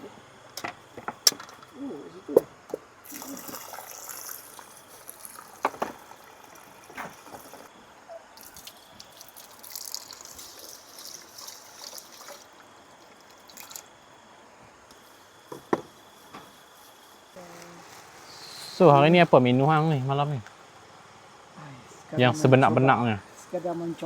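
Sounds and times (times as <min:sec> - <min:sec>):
water trickling: 0:03.0 - 0:07.7, 0:08.4 - 0:14.2.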